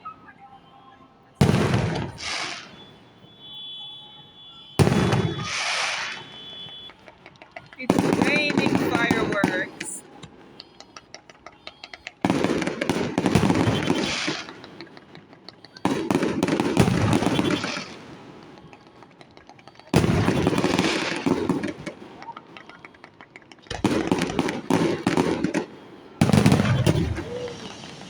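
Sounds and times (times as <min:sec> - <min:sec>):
fireworks booming and crackling: 0:01.4 - 0:28.0.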